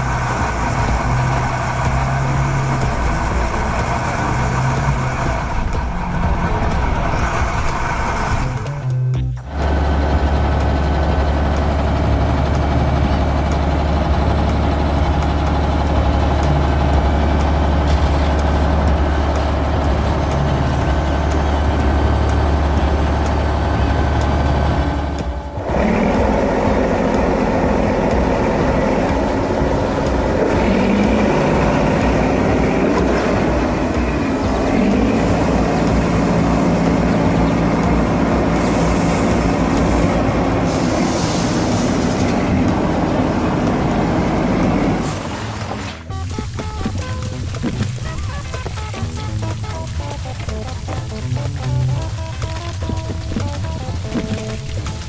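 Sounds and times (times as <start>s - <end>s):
higher-toned engine running: 0.0s - 55.0s
low engine drone: 0.0s - 55.0s.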